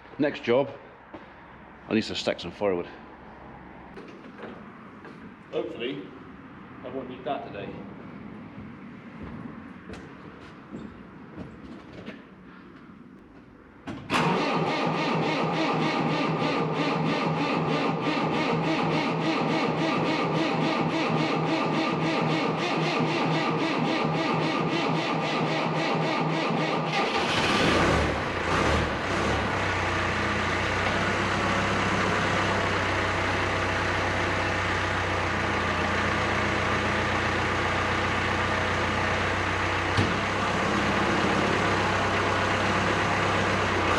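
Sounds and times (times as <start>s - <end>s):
diesel engine cranking and idling: 13.2s - 43.9s.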